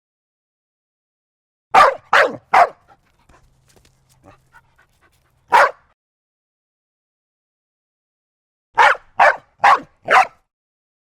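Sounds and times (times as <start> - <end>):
dog barking: 1.7 - 6.0, 8.8 - 10.5.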